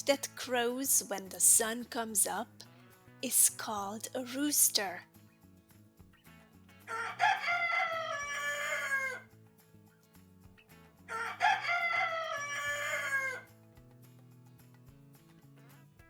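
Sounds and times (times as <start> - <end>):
rooster crowing: 6.9 - 9.3, 11.1 - 13.5.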